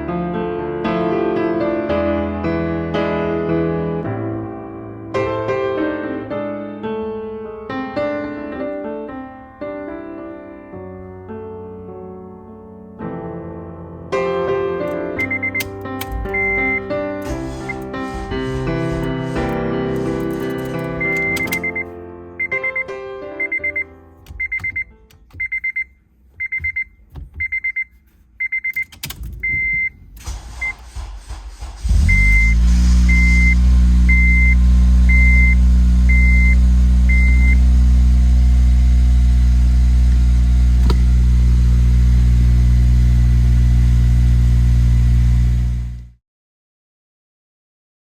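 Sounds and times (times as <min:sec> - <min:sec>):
car engine starting: 0:14.9 - 0:21.9, 0:28.0 - 0:46.2
electronic warning chime beeping: 0:15.2 - 0:16.9, 0:20.8 - 0:30.0, 0:32.1 - 0:37.6
car engine idling: 0:29.9 - 0:46.1.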